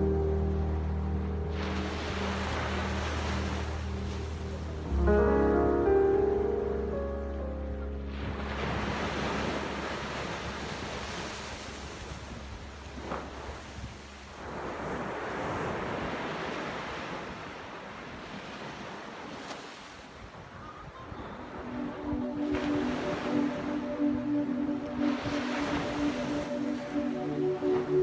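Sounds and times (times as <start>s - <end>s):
sea waves breaking on shore: 0.0s - 5.0s, 8.0s - 28.0s.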